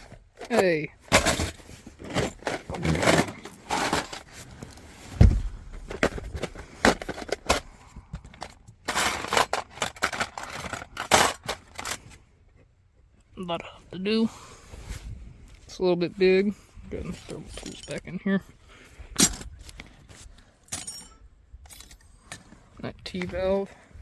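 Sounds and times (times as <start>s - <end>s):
metal tools clattering: 0.4s - 4.4s, 5.9s - 7.7s, 8.3s - 12.1s, 17.1s - 18.2s, 19.2s - 19.7s, 20.6s - 22.4s
heavy thump: 5.1s - 6.1s.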